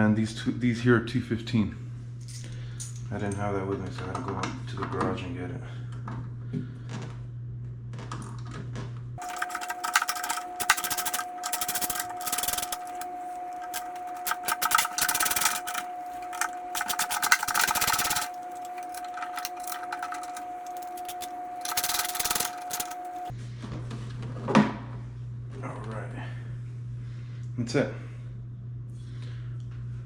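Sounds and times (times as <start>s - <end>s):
screwdriver rapid clicking: 9.2s - 23.3s
steady high tone: 9.2s - 23.3s.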